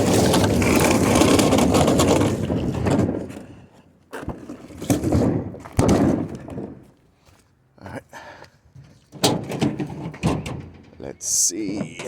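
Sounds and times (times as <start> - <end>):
refrigerator rolling across floor: 0.0 - 3.7.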